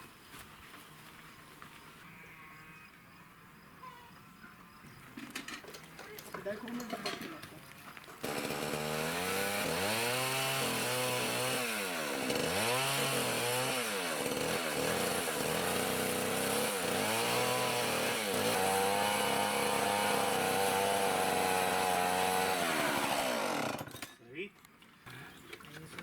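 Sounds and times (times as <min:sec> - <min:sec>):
power tool motor running: 0:08.2 - 0:24.0.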